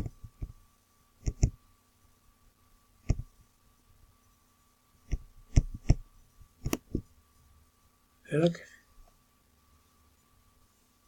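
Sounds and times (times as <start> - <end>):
faint steady hum: 0.0 - 11.0
computer mouse clicks: 1.2 - 1.6, 3.0 - 3.3, 5.1 - 6.0, 6.6 - 7.0.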